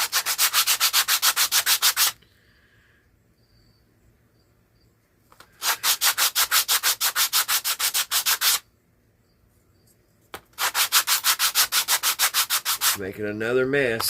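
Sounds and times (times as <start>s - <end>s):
sandpaper rubbing back and forth: 0.0s - 2.2s, 5.6s - 8.6s, 10.6s - 13.1s.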